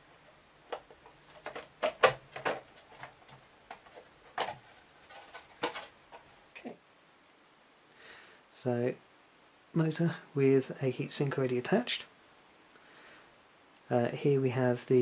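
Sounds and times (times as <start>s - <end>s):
plastic clicks and knocks: 0.7s - 6.3s.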